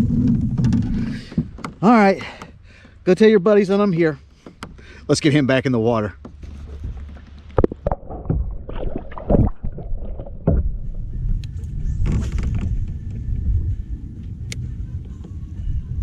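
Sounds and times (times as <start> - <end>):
wind rumbling on microphone: 0.0 - 1.8, 6.4 - 16.0
sharp knocks against kayak: 6.0 - 8.5.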